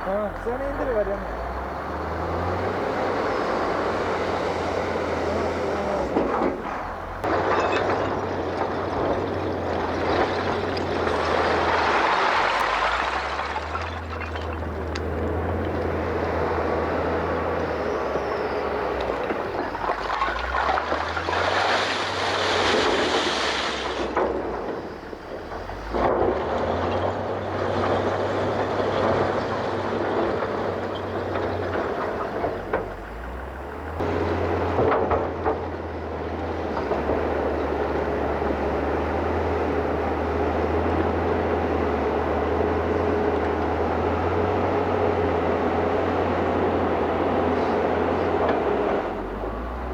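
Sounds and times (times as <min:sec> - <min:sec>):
diesel engine under load: 0:00.0 - 0:49.9
metal clanks and knocks: 0:06.1 - 0:11.4.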